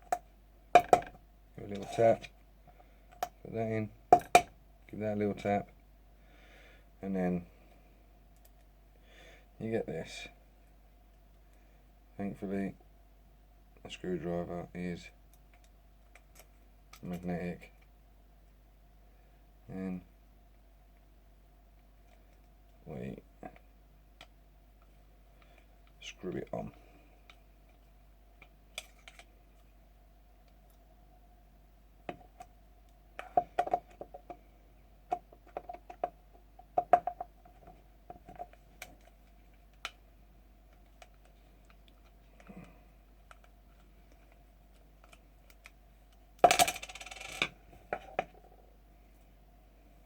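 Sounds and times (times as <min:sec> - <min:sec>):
small metal parts clinking: 0:46.4 - 0:47.5.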